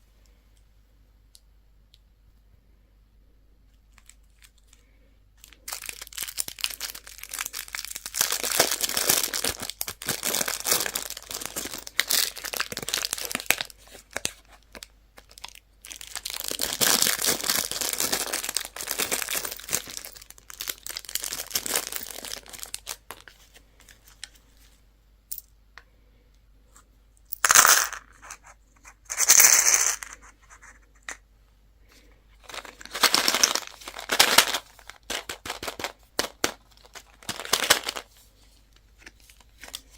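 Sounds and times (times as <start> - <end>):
plastic wrappers crinkling and tearing: 3.9 - 4.8, 5.4 - 24.3, 32.4 - 38.3, 38.9 - 39.9.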